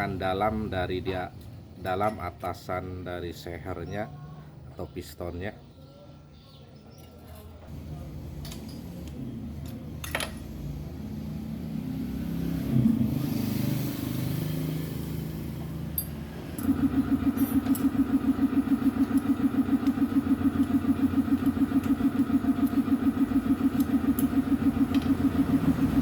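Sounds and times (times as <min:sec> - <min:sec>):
motorcycle engine idling: 0:16.6 - 0:26.0.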